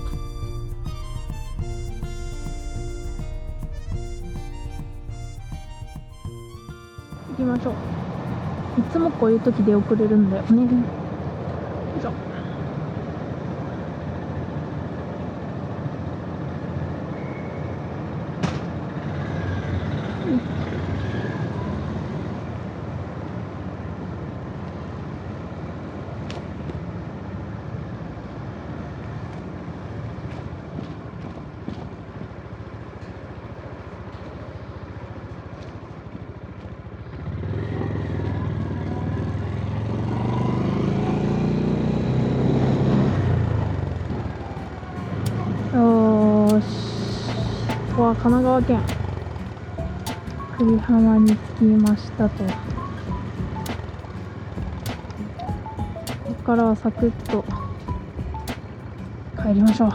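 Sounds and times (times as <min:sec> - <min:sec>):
low engine rumble: 0:00.0 - 0:16.0, 0:42.6 - 0:59.9
motorcycle engine accelerating: 0:33.6 - 0:59.9.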